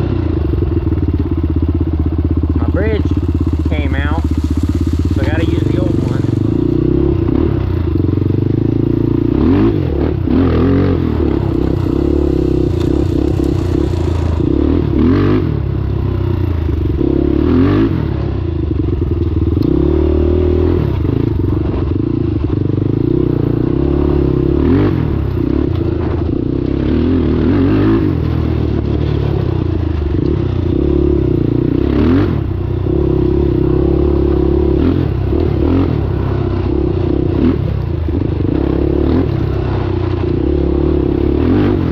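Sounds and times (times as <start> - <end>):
quad bike engine under load: 0.0 - 41.9
rattles and knocks over rough ground: 2.6 - 6.7, 11.0 - 14.8.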